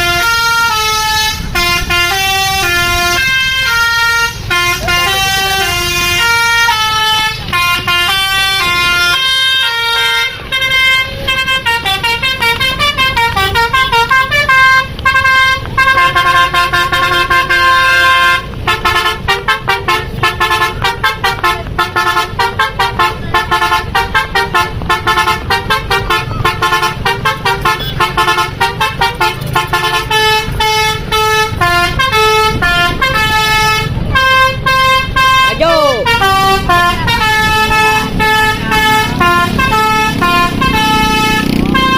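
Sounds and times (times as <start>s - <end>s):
bus engine rumble: 0.0s - 41.9s
musical bus horn melodies: 0.0s - 41.9s.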